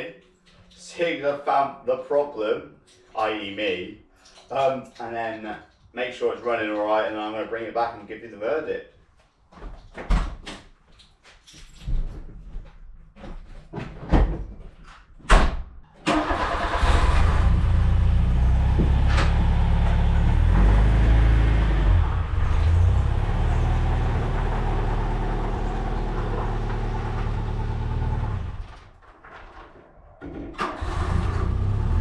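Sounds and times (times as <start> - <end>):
car engine starting and idling: 16.0 - 28.9, 30.5 - 32.0.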